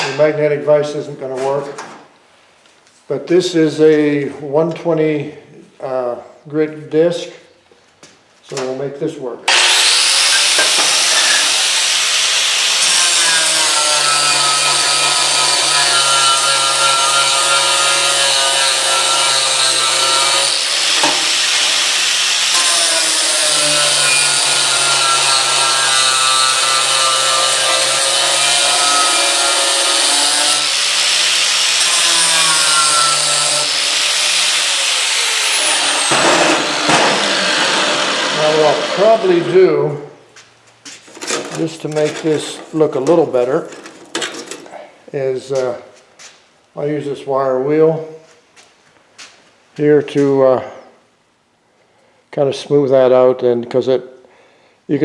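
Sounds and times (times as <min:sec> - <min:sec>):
angle grinder grinding metal: 0:09.5 - 0:39.8, 0:41.1 - 0:44.7.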